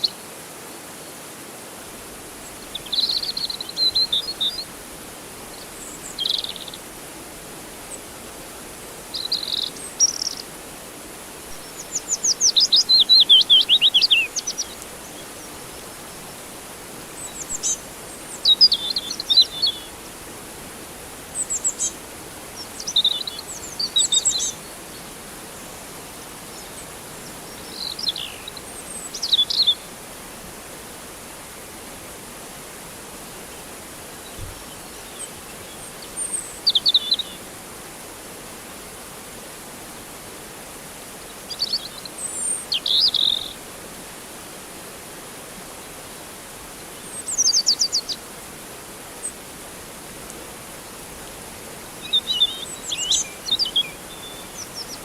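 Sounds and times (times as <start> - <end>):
flowing water: 0.0 - 55.0
birds chirping: 11.5 - 16.4, 17.1 - 20.0.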